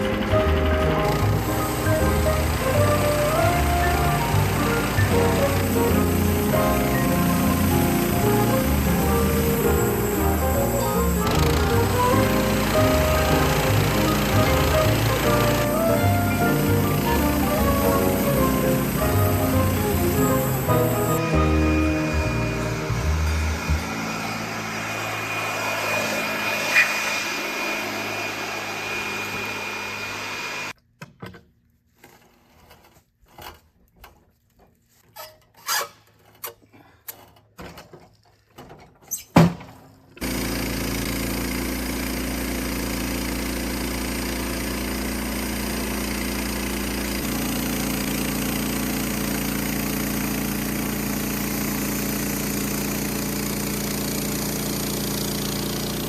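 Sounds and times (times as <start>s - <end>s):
sawmill gas engine running: 0.0s - 30.8s, 40.2s - 56.0s.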